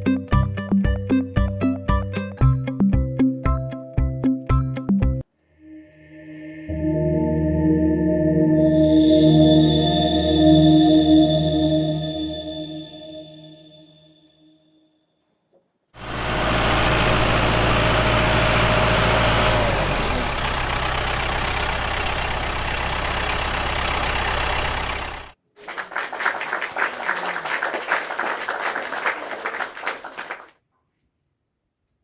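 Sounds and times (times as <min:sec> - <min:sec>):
bulldozer engine running: 0:00.0 - 0:05.2, 0:16.0 - 0:25.4.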